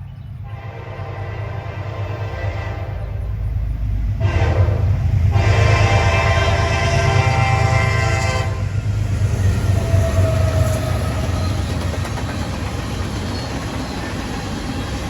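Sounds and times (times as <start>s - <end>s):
locomotive and train rumbling: 0.0s - 15.0s
locomotive air horn blasts: 0.4s - 3.4s, 4.2s - 8.8s.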